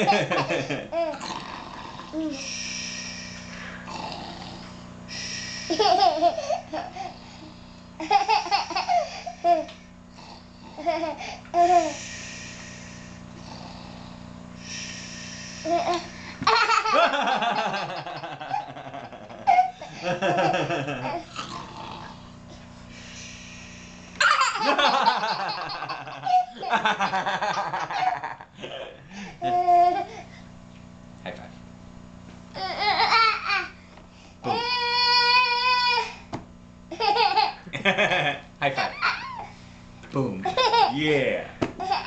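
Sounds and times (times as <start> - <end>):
children laughing: 0.0 - 1.0, 16.4 - 21.2, 24.2 - 30.0.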